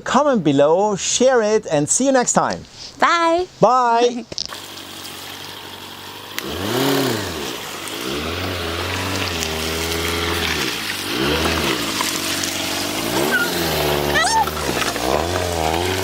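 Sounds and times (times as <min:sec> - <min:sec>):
vehicle engine revving: 0:04.6 - 0:16.0.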